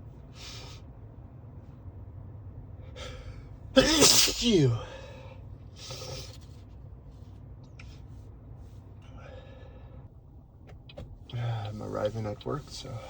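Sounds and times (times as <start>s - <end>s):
car engine and tyres droning: 0.0s - 13.0s
short breaths: 4.8s - 6.4s, 9.0s - 10.1s.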